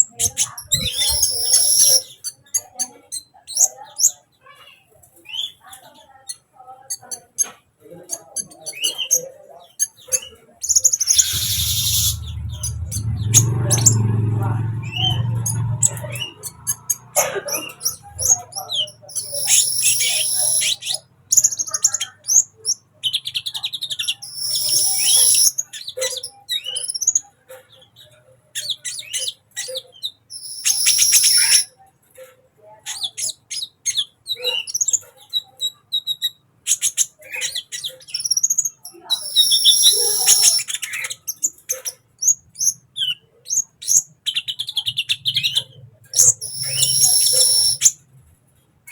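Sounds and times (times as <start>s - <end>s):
bird singing high chirps: 0.0s - 2.9s, 8.1s - 14.1s, 14.8s - 17.1s, 17.7s - 22.5s, 23.1s - 27.2s, 28.7s - 31.7s, 37.5s - 41.4s, 43.8s - 48.0s.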